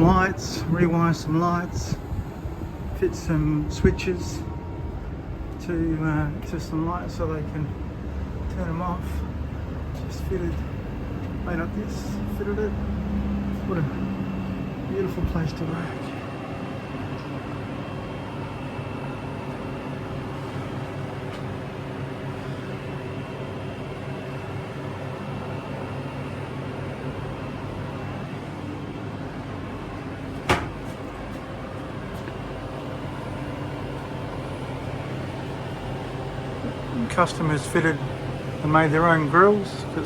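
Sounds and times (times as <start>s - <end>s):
fridge compressors humming: 0.0s - 40.0s
sharp knock: 30.5s - 30.8s.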